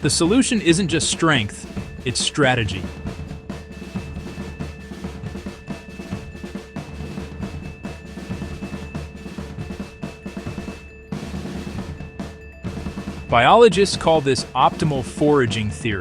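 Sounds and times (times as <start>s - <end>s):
upbeat drum-driven music: 0.0s - 16.0s.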